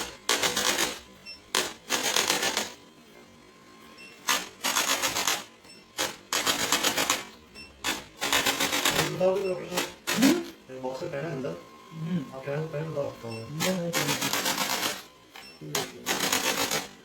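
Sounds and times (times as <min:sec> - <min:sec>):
rapid mechanical rattling: 0:00.0 - 0:02.8, 0:04.2 - 0:10.4, 0:13.6 - 0:15.1, 0:15.7 - 0:17.0.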